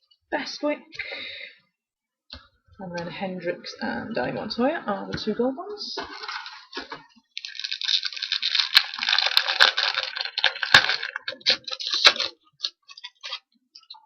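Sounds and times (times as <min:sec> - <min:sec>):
card pack wrapper crinkling: 0:06.0 - 0:14.0
sharp cracks: 0:06.6 - 0:13.3.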